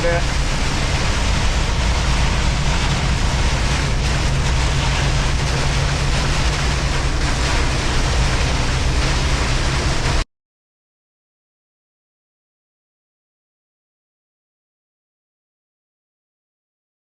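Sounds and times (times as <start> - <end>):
heavy rain on truck cab: 0.0 - 10.2
truck engine low drone: 0.0 - 10.2.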